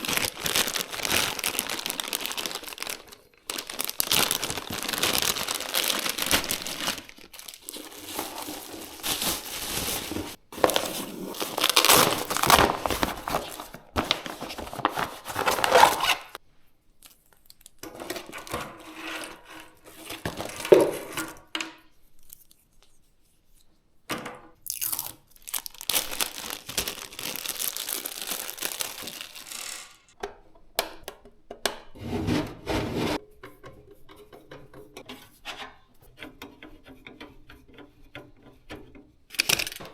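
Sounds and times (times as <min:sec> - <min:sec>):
hands rubbing and rustling: 0:04.9 - 0:16.4.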